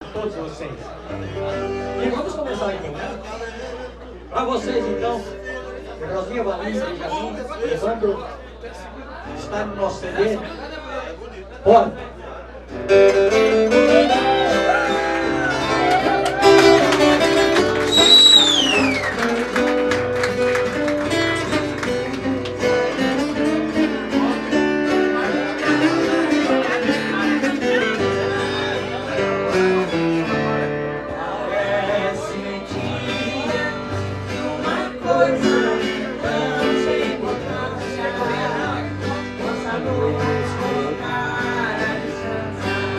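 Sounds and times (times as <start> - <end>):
live country band music: 1.1 - 2.1, 12.7 - 42.9.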